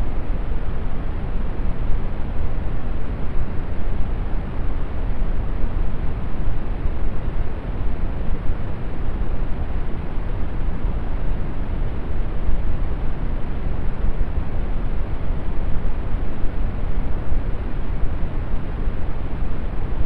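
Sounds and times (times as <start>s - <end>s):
steady brown noise hiss: 0.0s - 20.0s.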